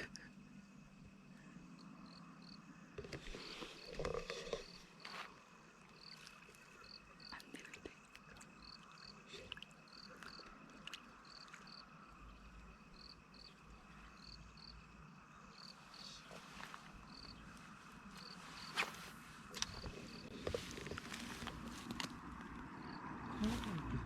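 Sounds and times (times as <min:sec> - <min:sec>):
crickets chirping: 0:00.0 - 0:24.0.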